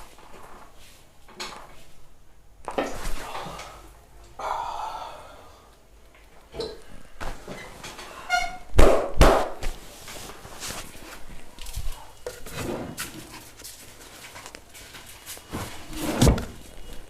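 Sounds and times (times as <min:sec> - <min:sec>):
hands slapping on body: 0:08.8 - 0:09.8.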